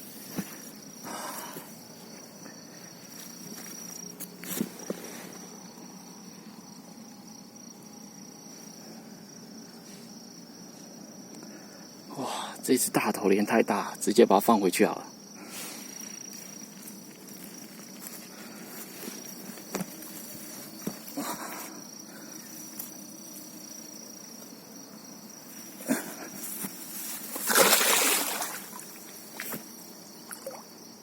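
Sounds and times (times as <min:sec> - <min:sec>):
crickets chirring: 0:00.0 - 0:31.0
fish splashing in water: 0:27.3 - 0:29.5, 0:30.3 - 0:30.7.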